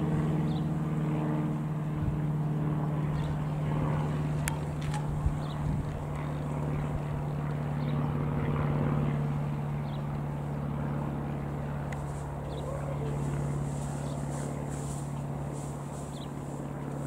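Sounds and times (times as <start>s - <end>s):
propeller plane engine droning: 0.0s - 17.0s.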